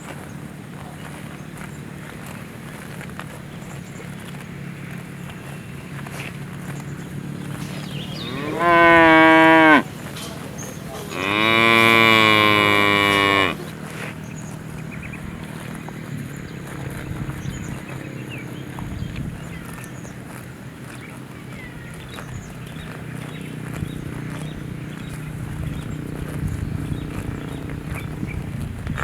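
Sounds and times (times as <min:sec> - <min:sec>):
cow mooing: 0:08.0 - 0:10.1, 0:11.0 - 0:13.7.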